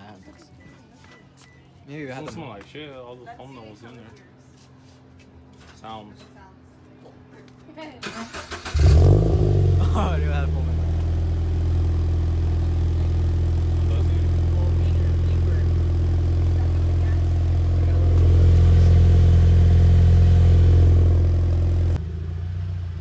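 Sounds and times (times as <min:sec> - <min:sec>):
car engine idling: 0:08.0 - 0:23.0.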